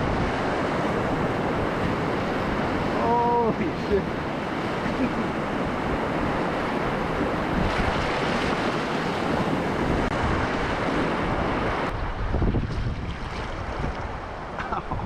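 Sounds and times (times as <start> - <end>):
wind noise on microphone: 0.0 - 3.5, 5.4 - 15.0
river whitewater rushing: 0.0 - 11.9.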